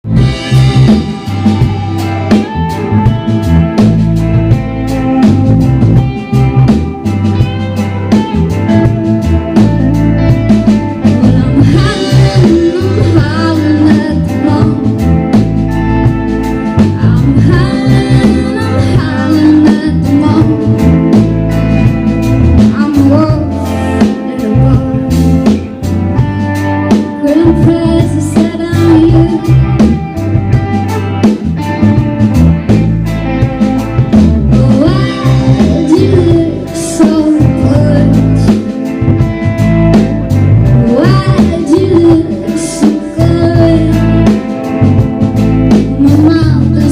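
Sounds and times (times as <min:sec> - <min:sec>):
live country rock band: 0:00.0 - 0:46.9
lead singer: 0:07.4 - 0:31.2, 0:34.0 - 0:46.9.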